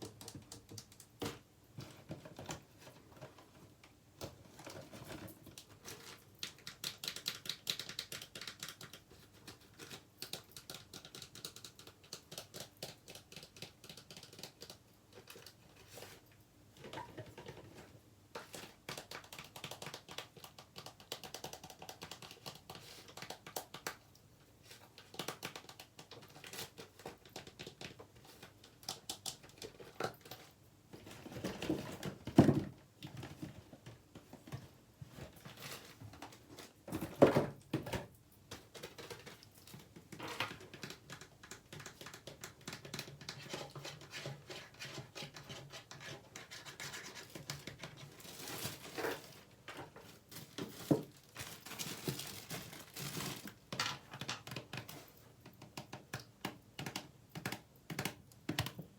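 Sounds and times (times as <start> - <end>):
fast tapping and scratching: 6.4 - 15.6, 18.6 - 24.0, 40.1 - 48.1.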